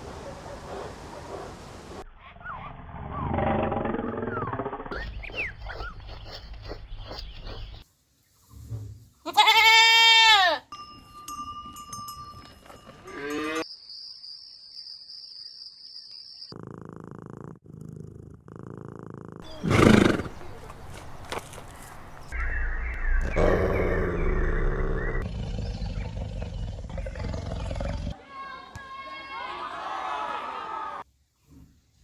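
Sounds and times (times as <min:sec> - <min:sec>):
goats bleating: 0:09.3 - 0:10.6.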